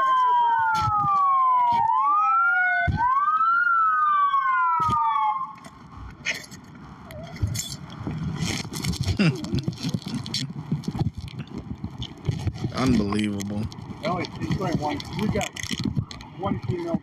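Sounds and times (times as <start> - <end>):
police sirens wailing: 0.0 - 6.0
rustling: 5.7 - 17.0.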